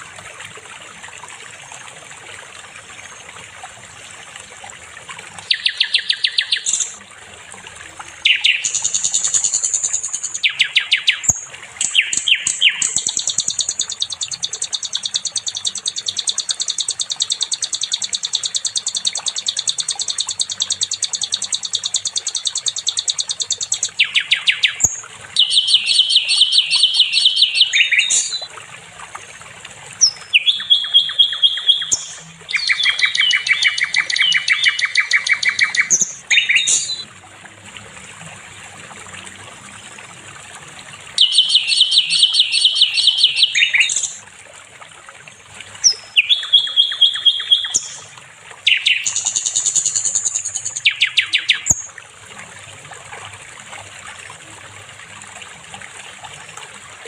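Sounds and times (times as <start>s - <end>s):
songbird trilling: 5.4s - 7.0s, 8.2s - 28.5s, 30.0s - 37.1s, 41.2s - 44.2s, 45.8s - 48.1s, 48.7s - 51.9s.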